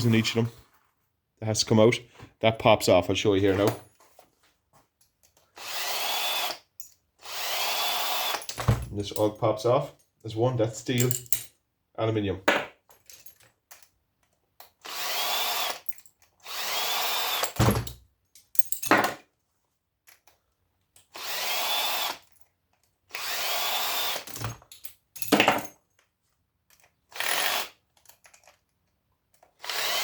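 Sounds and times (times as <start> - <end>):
cordless drill whining: 5.6 - 8.6, 14.8 - 17.6, 21.1 - 22.3, 23.1 - 24.6, 27.1 - 27.8, 29.6 - 30.0
metal knocks of parts handled: 10.9 - 11.6, 17.6 - 19.2, 24.6 - 25.8.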